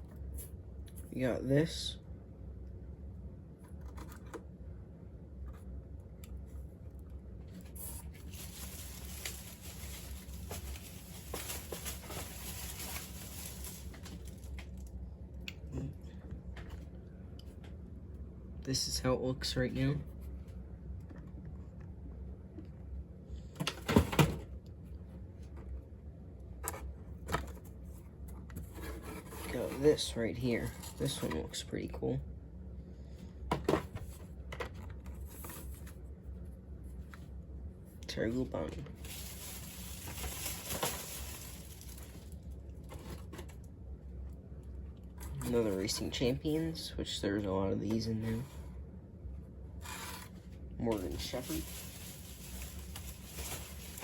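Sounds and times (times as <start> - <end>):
low steady hum: 0.0 - 54.0
packaging rustling and clicking: 7.9 - 14.8.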